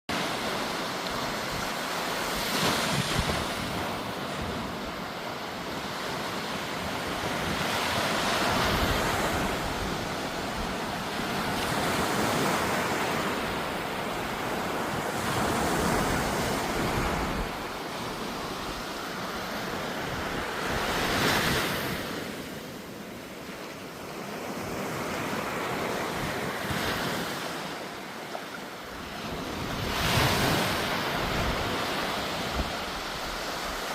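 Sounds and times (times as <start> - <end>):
sea waves breaking: 0.1 - 33.9
wind buffeting microphone: 1.1 - 22.2, 29.0 - 33.9.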